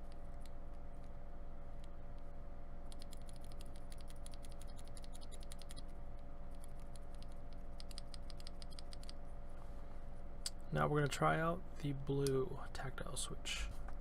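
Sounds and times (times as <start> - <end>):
faint steady hum: 0.0 - 14.0
mechanical keyboard typing: 2.9 - 5.8.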